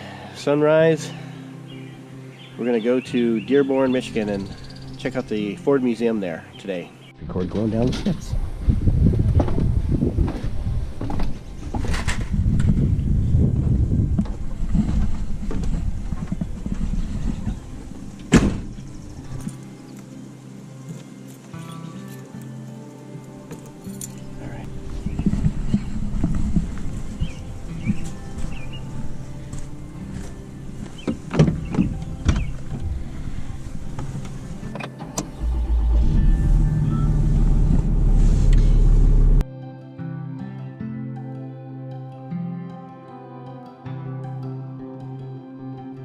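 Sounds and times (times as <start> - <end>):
quiet steady tones: 17.4 - 39.4
vehicle door slamming: 18.2 - 18.8
low rumbling noise: 31.5 - 39.4.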